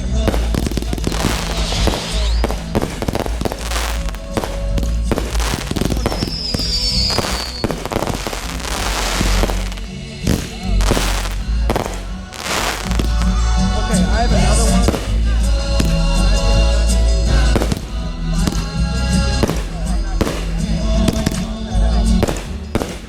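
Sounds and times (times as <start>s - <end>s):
deep rumble: 0.0s - 22.8s
fireworks bangs and booms: 0.0s - 23.0s
firework whistle: 0.3s - 13.4s, 14.8s - 16.0s, 22.2s - 23.0s.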